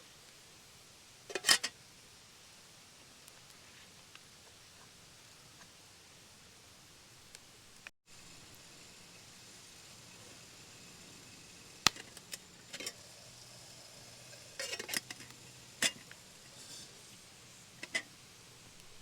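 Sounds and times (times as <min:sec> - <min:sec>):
faint steady rush: 0:07.7 - 0:19.0.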